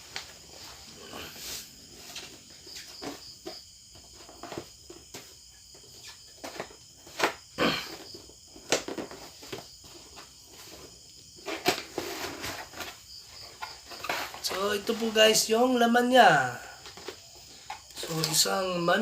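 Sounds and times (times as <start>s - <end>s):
packaging rustling and crinkling: 8.0s - 16.1s, 16.7s - 19.0s.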